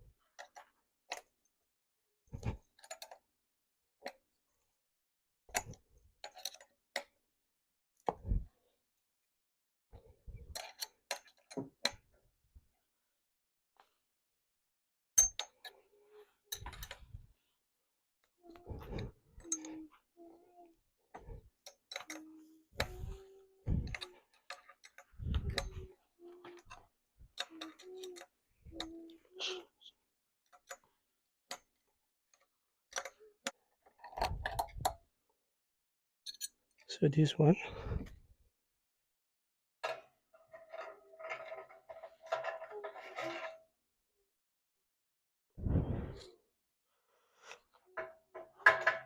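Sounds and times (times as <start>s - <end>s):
bicycle parts and tools clicking: 21.2s - 29.6s.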